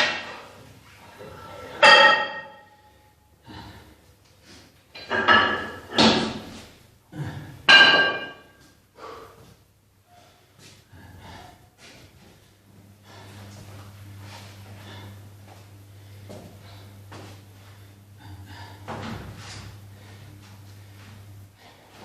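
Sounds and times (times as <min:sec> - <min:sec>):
metal gym weights clanking: 0:01.6 - 0:02.8, 0:07.7 - 0:08.5.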